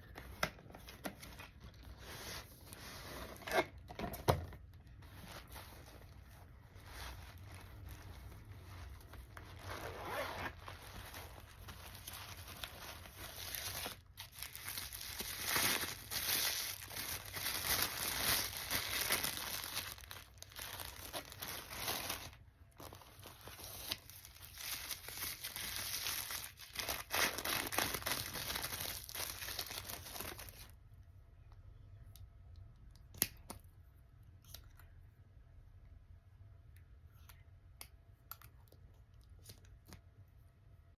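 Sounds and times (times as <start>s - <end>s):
packaging tearing and crinkling: 9.6s - 30.7s.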